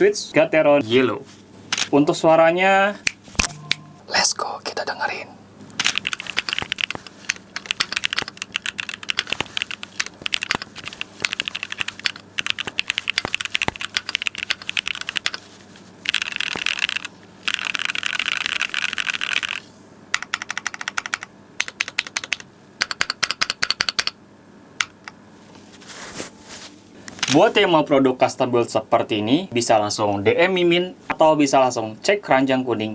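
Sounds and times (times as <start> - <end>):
mechanical keyboard typing: 5.8 - 15.4, 16.0 - 24.2.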